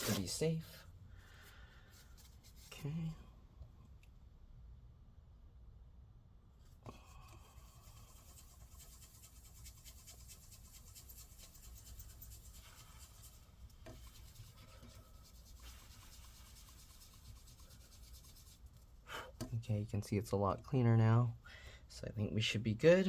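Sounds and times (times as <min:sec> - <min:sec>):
paper towel rubbing: 0:00.0 - 0:00.8, 0:07.5 - 0:19.0.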